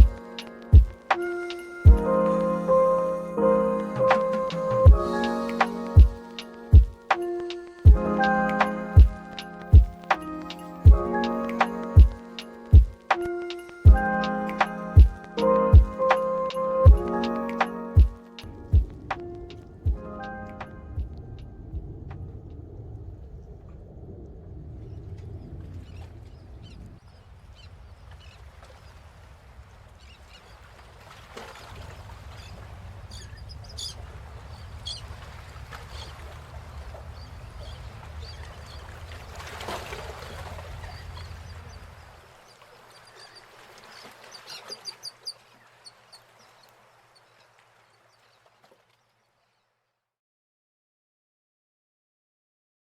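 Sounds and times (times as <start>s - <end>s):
birds chirping: 0.0s - 22.1s, 24.6s - 29.1s, 31.6s - 49.6s
low steady rumble: 18.4s - 28.0s.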